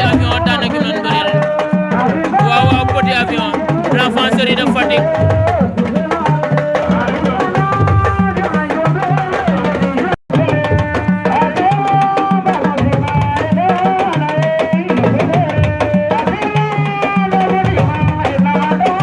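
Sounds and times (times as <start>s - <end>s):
music with fast drums and singing: 0.0s - 19.0s.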